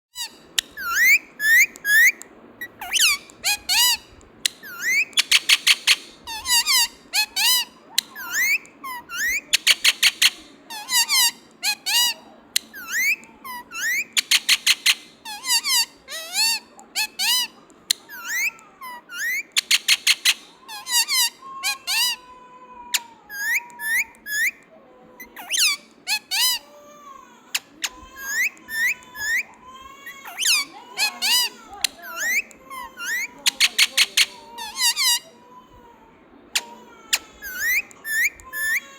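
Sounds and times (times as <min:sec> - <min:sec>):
parakeet chirping and squawking: 0:00.2 - 0:22.2, 0:25.2 - 0:26.6, 0:27.8 - 0:29.6, 0:30.2 - 0:35.3, 0:36.6 - 0:38.9
parakeet rapid chattering: 0:00.2 - 0:22.2, 0:25.2 - 0:26.6, 0:27.6 - 0:35.2, 0:36.6 - 0:38.9.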